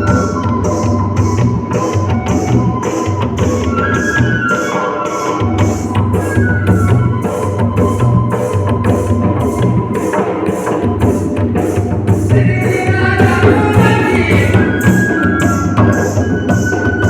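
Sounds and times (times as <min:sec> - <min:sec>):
hand drum beat: 0:00.0 - 0:17.0.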